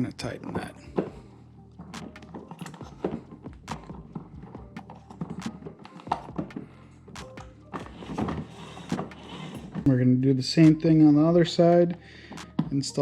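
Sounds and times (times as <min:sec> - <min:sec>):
hand tool tightening a nut: 0:01.8 - 0:09.9.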